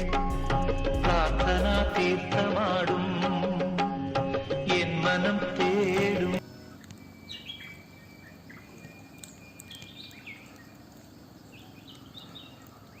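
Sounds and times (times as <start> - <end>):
birds chirping faintly: 5.6 - 13.0.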